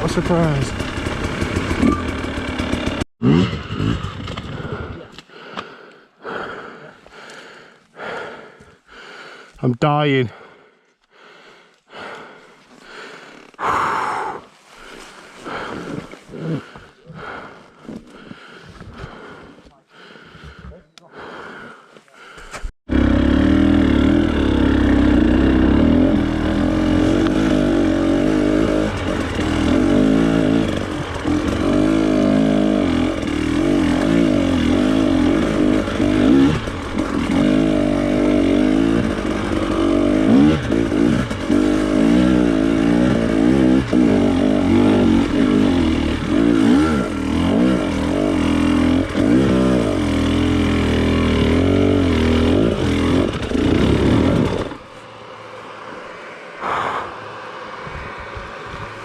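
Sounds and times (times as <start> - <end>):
motorcycle engine revving: 0.0 - 5.2, 22.9 - 59.0.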